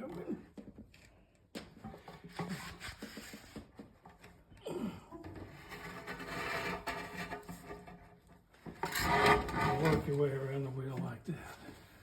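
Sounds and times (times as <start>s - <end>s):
steel scraper scraping rubber tire: 5.6s - 7.7s, 8.8s - 10.2s.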